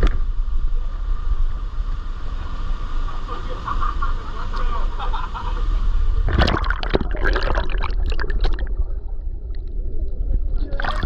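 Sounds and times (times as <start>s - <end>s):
steady low rumble: 0.0s - 11.0s
creek water rushing and splashing: 6.2s - 9.5s.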